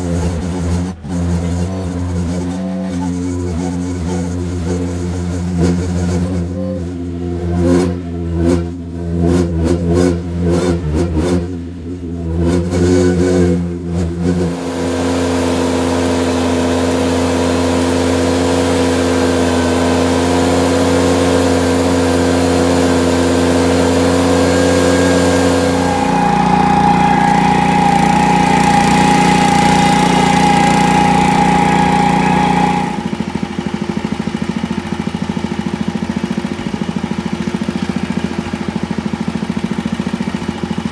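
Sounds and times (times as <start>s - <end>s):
tractor engine running: 14.5s - 40.9s
high steady whine: 21.4s - 33.8s.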